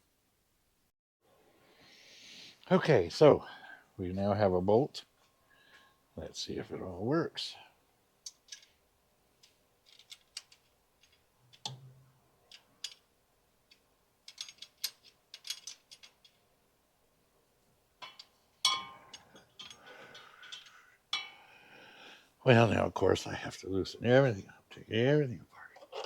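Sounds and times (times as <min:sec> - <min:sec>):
bolt scraping rattle: 0:09.8 - 0:11.8, 0:13.7 - 0:16.4.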